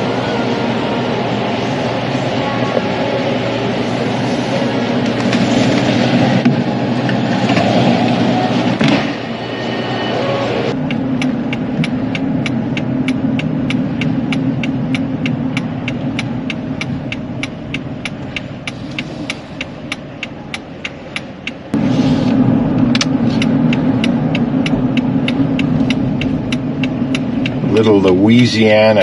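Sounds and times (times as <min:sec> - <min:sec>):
low vehicle rumble: 0:00.0 - 0:29.0
fast even ticking: 0:10.8 - 0:21.8, 0:23.4 - 0:28.8.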